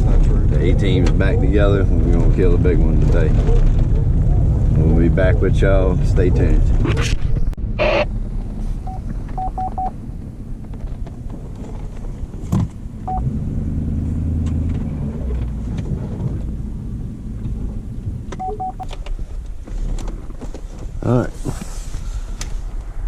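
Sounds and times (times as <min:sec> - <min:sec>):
truck engine and tyres rumbling: 0:00.0 - 0:23.0
short electronic beeps: 0:07.8 - 0:08.1, 0:08.8 - 0:09.9, 0:18.4 - 0:18.9.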